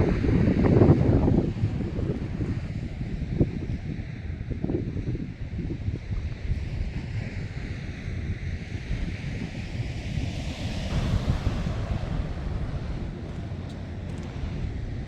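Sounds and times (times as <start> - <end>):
wind rumbling on microphone: 0.0 - 15.0
sea waves washing: 6.6 - 15.0.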